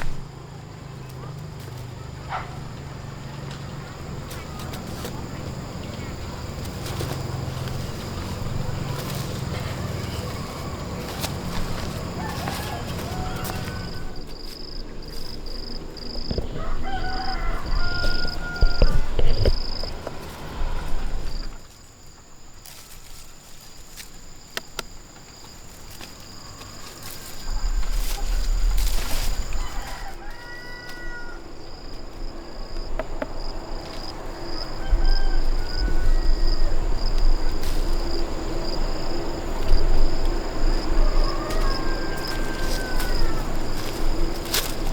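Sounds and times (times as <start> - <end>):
chicken calls: 1.1 - 14.5, 15.2 - 21.6, 26.1 - 44.9
low rumble: 27.4 - 29.8
high-pitched insect drone: 33.7 - 44.9.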